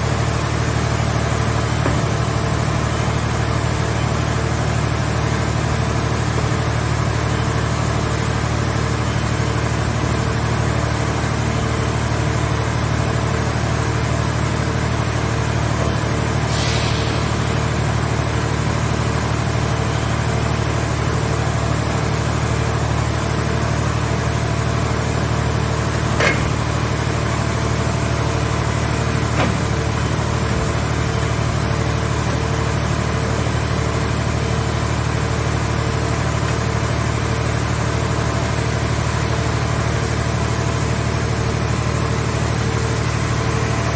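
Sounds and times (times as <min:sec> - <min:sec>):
power unit humming: 0:12.8 - 0:43.9
short hiss: 0:16.4 - 0:17.8.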